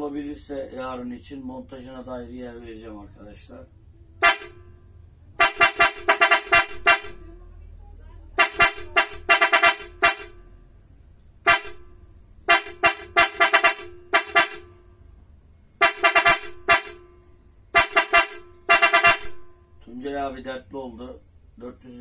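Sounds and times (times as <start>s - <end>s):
buzzy car horn blasts: 4.2s - 7.4s, 8.4s - 10.6s, 11.4s - 15.0s, 15.7s - 19.9s.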